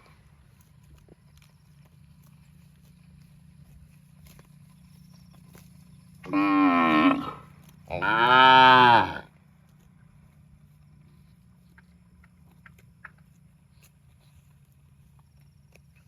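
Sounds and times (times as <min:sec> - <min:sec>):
cow mooing: 0:06.2 - 0:09.3.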